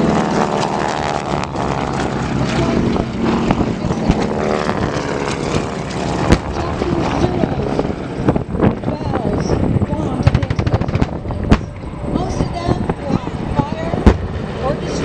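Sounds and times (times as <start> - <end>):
propeller planes flying overhead: 0.0 - 15.0
sharp cracks and bangs: 10.2 - 11.8.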